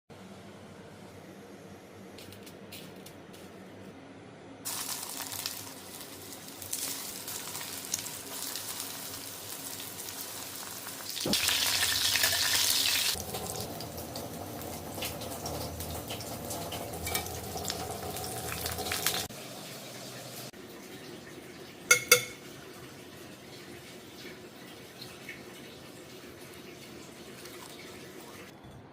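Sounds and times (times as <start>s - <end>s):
food sizzling in hot oil: 4.7s - 20.5s.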